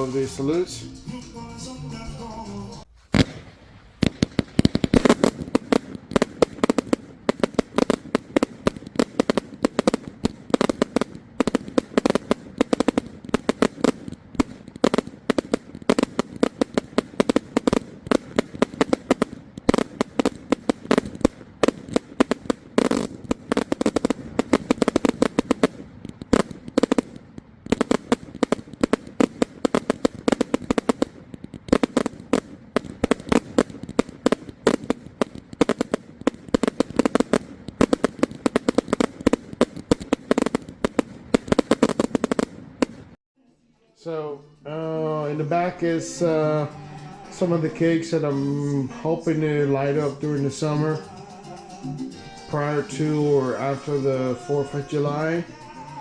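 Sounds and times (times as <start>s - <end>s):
rapid firework salute bangs: 2.9s - 43.2s.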